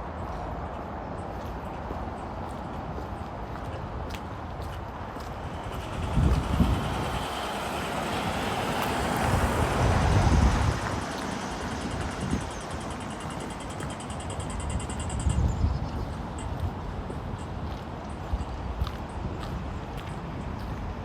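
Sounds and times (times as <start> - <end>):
wind buffeting microphone: 0.0 - 21.0
motor vehicle passing: 5.4 - 15.4.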